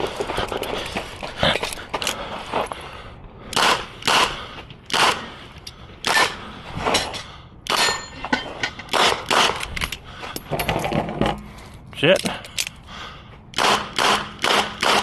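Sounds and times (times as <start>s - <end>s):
bullets pinging on steel targets: 7.7s - 9.3s.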